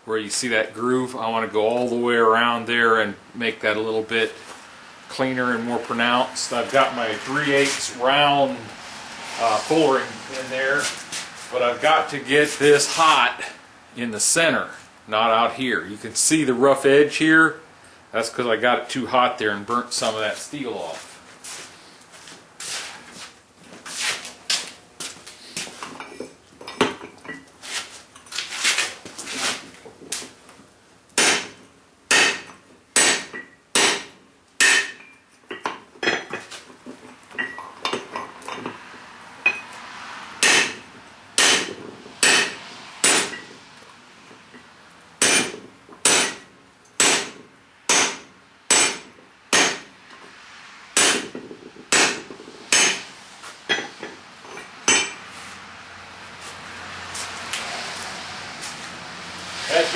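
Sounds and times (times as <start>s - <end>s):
hammer striking steel on anvil: 31.2s - 36.3s, 40.4s - 43.5s, 45.2s - 49.9s, 51.0s - 53.1s, 54.9s - 55.2s.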